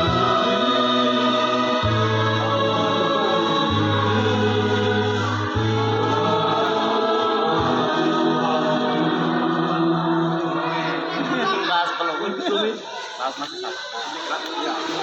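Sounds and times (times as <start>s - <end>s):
sustained keyboard chords: 0.0s - 10.7s
church choir singing a hymn: 0.0s - 15.0s.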